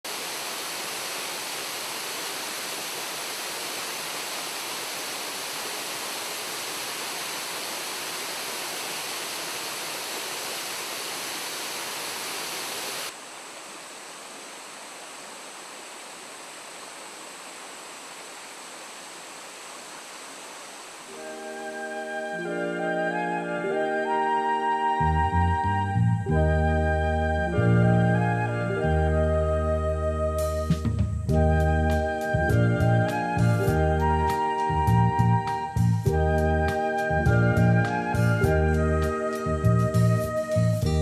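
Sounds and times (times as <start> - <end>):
waterfall roaring: 0.0 - 22.5.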